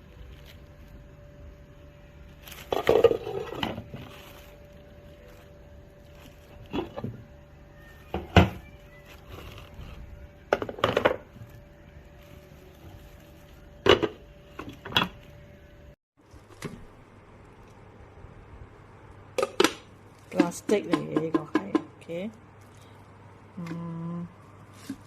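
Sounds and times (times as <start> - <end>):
faint steady hum: 0.0 - 25.0
cooker parts knocking and clattering: 10.5 - 11.3, 19.4 - 22.0.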